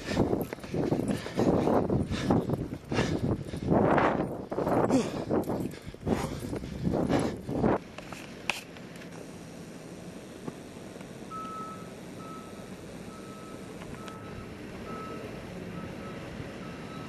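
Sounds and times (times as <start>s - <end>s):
rustling bumps: 0.0s - 8.7s
vehicle reversing alarm beeping: 11.2s - 17.0s.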